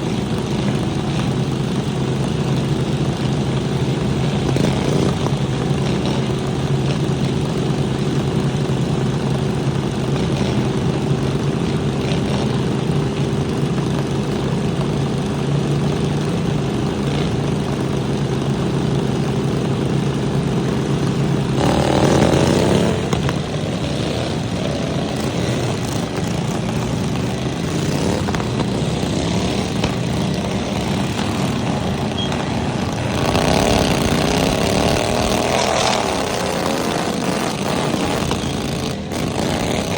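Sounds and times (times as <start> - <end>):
lawnmower engines revving: 0.0 - 39.9.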